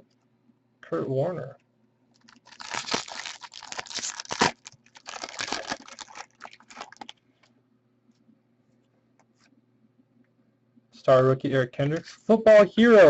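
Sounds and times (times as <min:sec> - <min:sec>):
foil wrapper crinkling and tearing: 0:02.2 - 0:07.2.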